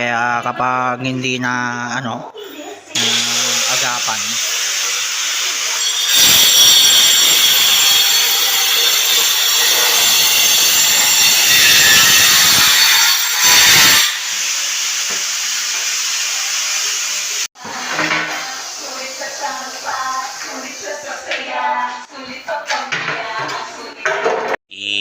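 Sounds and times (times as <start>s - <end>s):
power tool grinding concrete: 3.0s - 17.4s.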